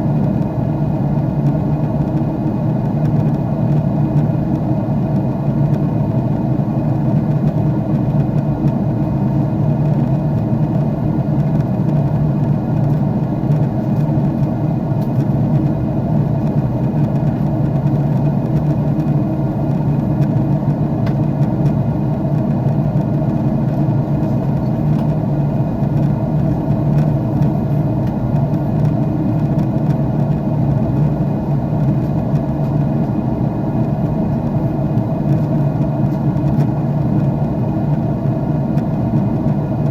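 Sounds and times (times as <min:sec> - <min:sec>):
jet engine and airflow drone: 0:00.0 - 0:39.9
low hum: 0:11.7 - 0:39.9.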